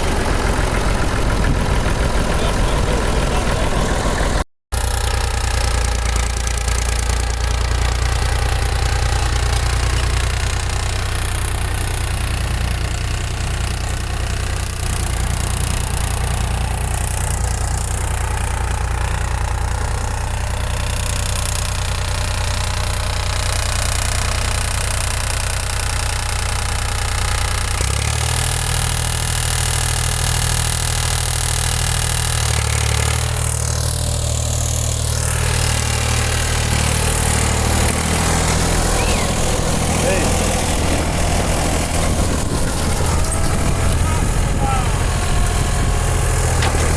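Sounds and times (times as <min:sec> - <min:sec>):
engine intake noise: 0:00.0 - 0:04.4, 0:35.4 - 0:46.9
diesel tractor engine running: 0:00.0 - 0:46.9.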